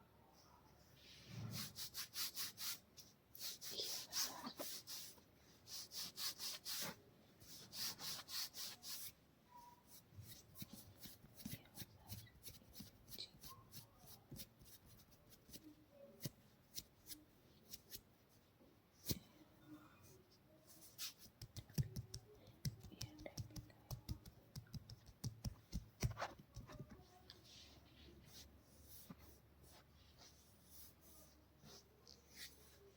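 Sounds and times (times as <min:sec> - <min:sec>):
light taps and brushing: 0:20.8 - 0:32.9.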